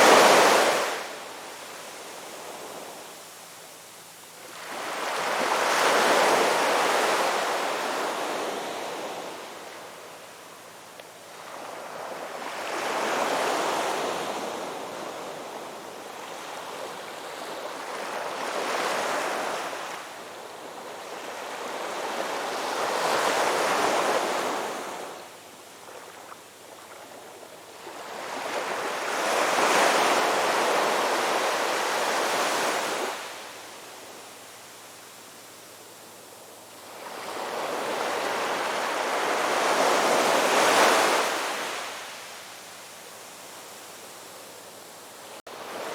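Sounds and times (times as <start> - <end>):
ocean waves breaking on beach: 45.4 - 45.9.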